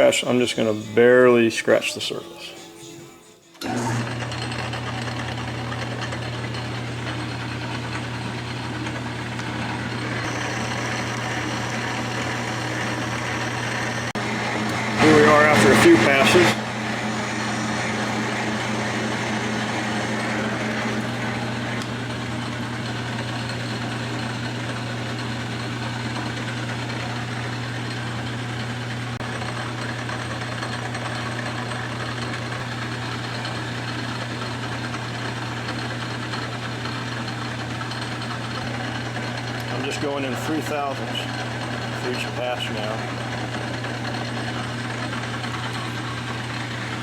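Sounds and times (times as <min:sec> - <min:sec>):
metal lathe machining: 0:00.0 - 0:02.1, 0:03.6 - 0:47.0.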